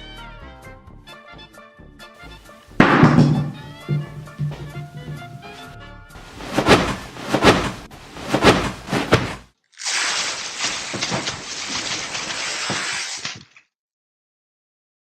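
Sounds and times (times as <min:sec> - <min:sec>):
heavy hits: 0:02.7 - 0:09.4.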